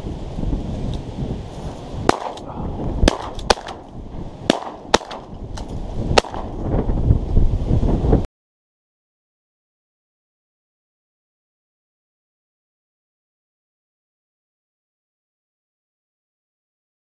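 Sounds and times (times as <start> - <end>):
wind rumbling on microphone: 0.0 - 8.3
shotgun shots: 2.1 - 3.9, 4.5 - 5.3, 6.2 - 6.6.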